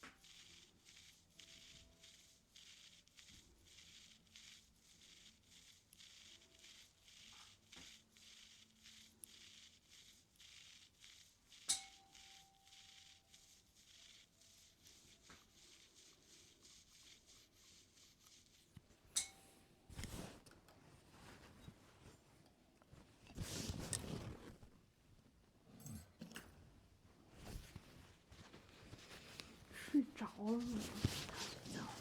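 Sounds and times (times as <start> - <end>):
ear tool scratching in ear: 0.0 - 19.3, 28.9 - 32.0.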